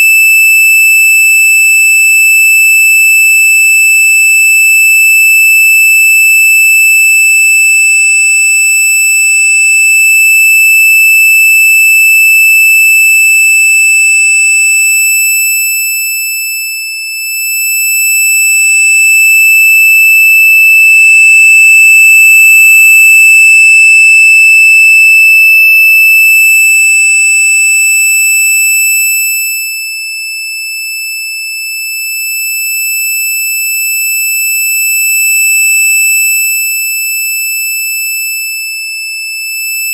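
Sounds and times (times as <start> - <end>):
piercing high electronic tone: 20.3 - 25.9.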